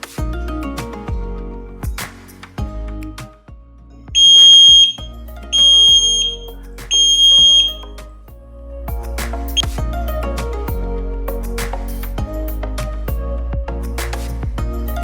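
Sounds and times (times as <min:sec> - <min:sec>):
background music: 0:00.0 - 0:15.0
smoke alarm beeps: 0:04.2 - 0:07.9.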